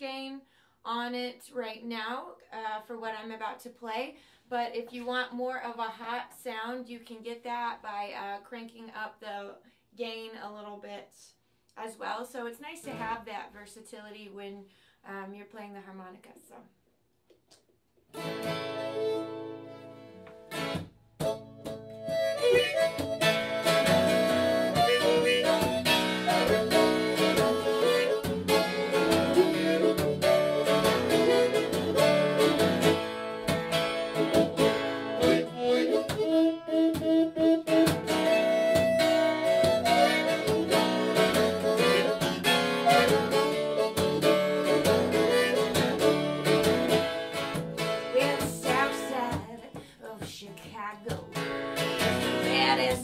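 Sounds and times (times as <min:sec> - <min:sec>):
guitar playing: 0:12.8 - 0:13.2, 0:18.1 - 0:49.7, 0:51.0 - 0:53.0
amplified harmonica: 0:18.2 - 0:49.4, 0:51.4 - 0:53.0.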